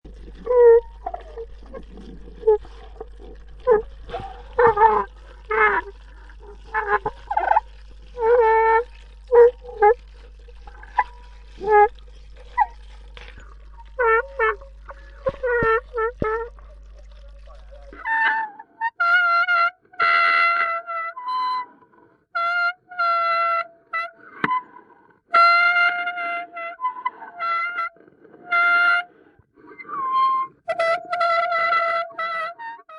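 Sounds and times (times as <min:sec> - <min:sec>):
steady low hum: 0:00.0 - 0:18.0
underwater calls and squeals: 0:00.1 - 0:21.8, 0:22.4 - 0:32.9.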